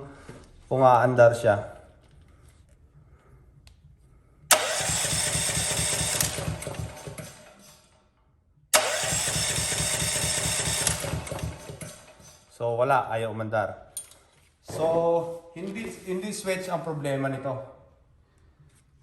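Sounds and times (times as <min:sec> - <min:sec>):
engine cranking by electric starter: 0:04.5 - 0:08.0, 0:08.7 - 0:12.5.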